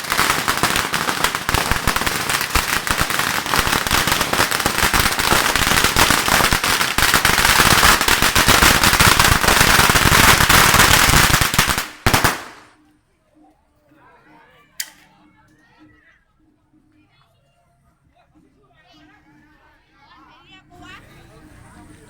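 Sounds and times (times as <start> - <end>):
firecrackers crackling: 0.0 - 12.8.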